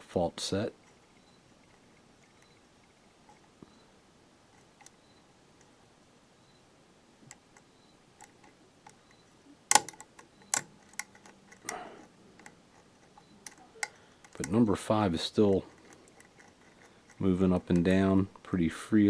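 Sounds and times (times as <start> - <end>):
lock pick clicking in lock: 9.7 - 14.5.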